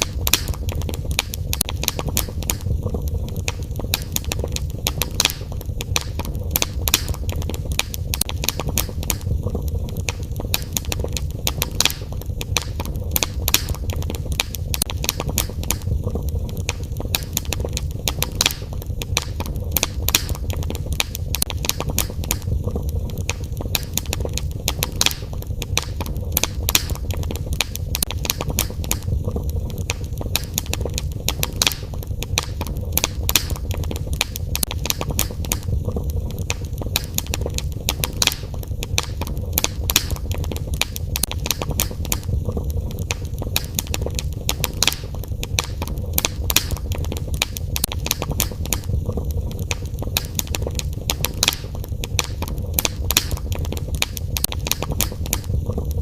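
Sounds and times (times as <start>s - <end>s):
fire crackling: 0.0s - 56.0s
low rumble: 25.4s - 37.9s, 40.2s - 44.5s, 46.8s - 51.1s, 54.8s - 56.0s.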